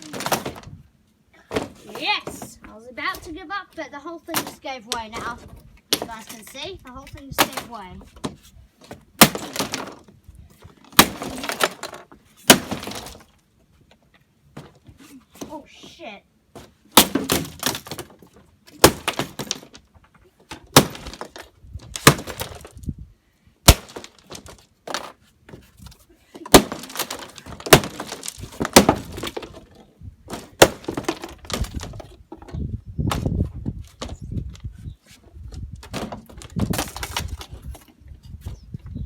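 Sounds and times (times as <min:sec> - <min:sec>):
electronics being smashed: 0:09.2 - 0:10.0, 0:10.8 - 0:13.3, 0:16.9 - 0:18.1, 0:18.7 - 0:19.8, 0:20.7 - 0:22.7, 0:23.7 - 0:25.1, 0:26.5 - 0:29.6, 0:30.3 - 0:32.0
pieces clattering and scraping: 0:09.2 - 0:13.3, 0:17.0 - 0:22.8, 0:23.7 - 0:32.6, 0:35.1 - 0:38.0.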